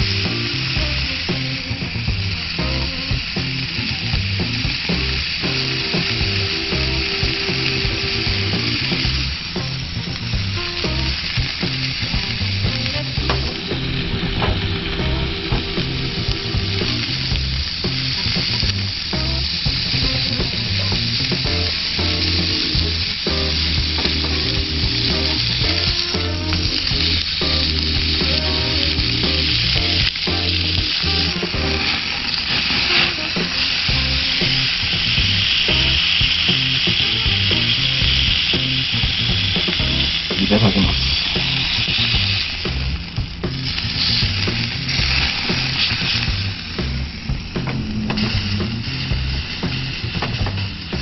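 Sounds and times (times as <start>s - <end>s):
food sizzling on a grill plate: 0.0s - 14.0s, 15.4s - 51.0s
background music with bass line: 0.0s - 51.0s.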